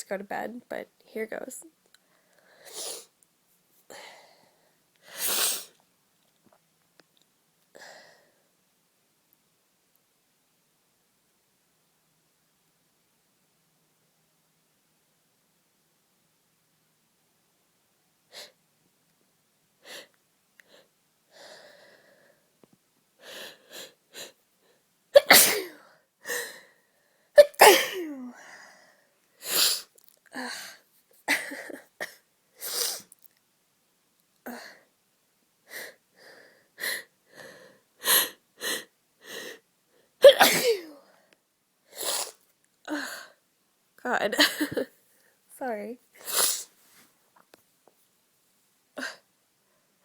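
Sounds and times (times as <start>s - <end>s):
woman sneezing: 25.2s - 25.8s, 27.4s - 28.3s, 40.2s - 41.0s, 46.2s - 46.7s.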